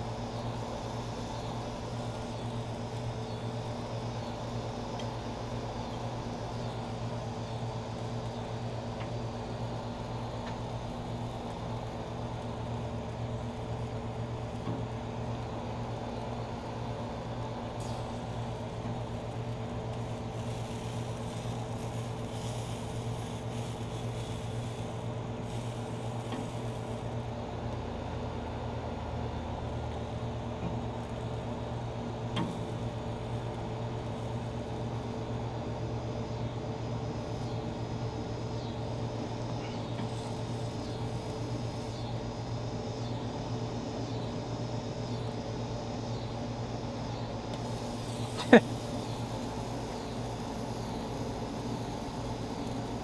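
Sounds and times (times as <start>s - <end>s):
motor hum and whir: 0.0s - 53.0s.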